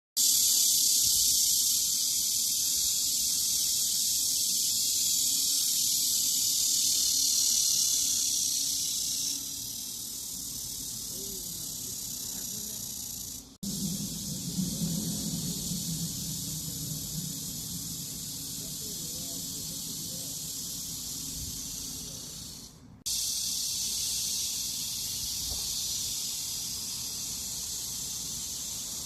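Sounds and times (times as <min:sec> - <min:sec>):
cicadas droning: 0:00.2 - 0:29.0
low hum: 0:13.4 - 0:22.2.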